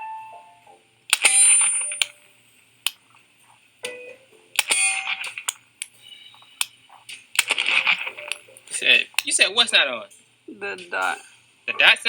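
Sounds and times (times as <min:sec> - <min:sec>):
pistol shots with metallic ring: 0:01.1 - 0:02.2, 0:04.6 - 0:06.2.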